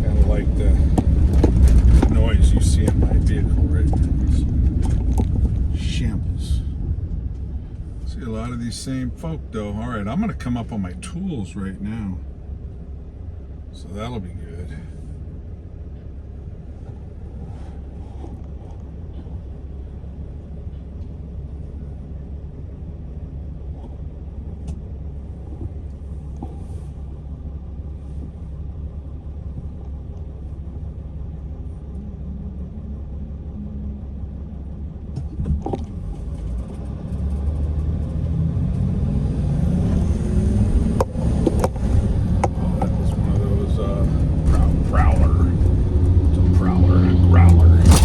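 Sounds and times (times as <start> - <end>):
car engine and road rumble: 0.0 - 48.0.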